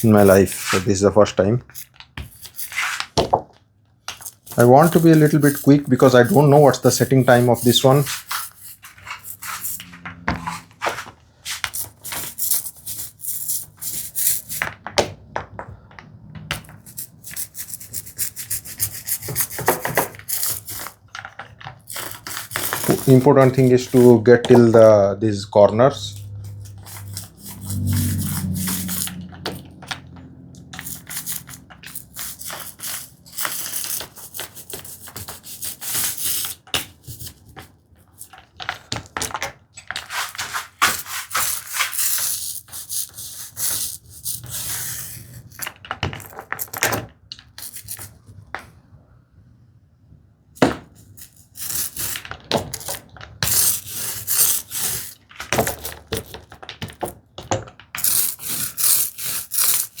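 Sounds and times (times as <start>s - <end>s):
paint roller rubbing on wood: 0.0s - 1.3s, 2.3s - 3.2s, 4.2s - 14.7s, 16.7s - 21.0s, 21.9s - 24.9s, 25.8s - 37.4s, 40.0s - 45.7s, 51.2s - 56.3s, 58.0s - 60.0s.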